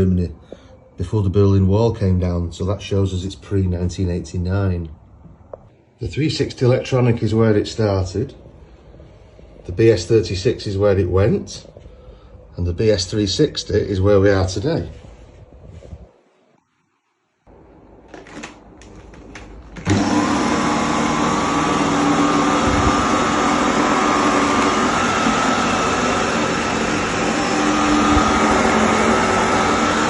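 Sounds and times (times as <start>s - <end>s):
vacuum cleaner motor running: 18.2s - 30.0s.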